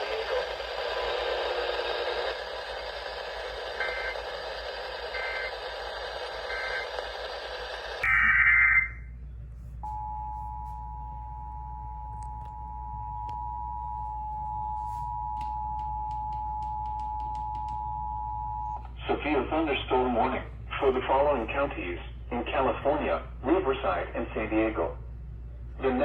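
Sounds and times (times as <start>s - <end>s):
radio signal hiss: 0.0s - 9.0s
two-pitch data-tone bursts: 8.0s - 9.0s
two-tone attention signal: 8.0s - 9.1s.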